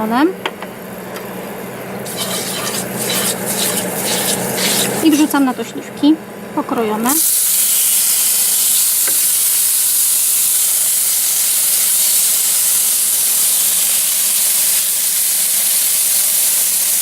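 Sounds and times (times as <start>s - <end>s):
fruit sizzling in a frying pan: 2.0s - 5.6s, 7.1s - 17.0s.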